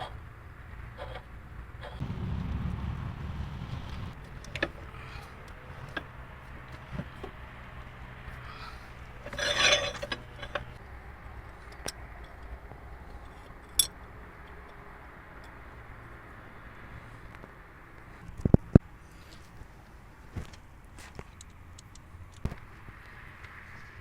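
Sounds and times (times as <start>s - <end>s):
low steady hum: 2.0s - 7.4s
rasping metal scrape: 8.4s - 10.7s.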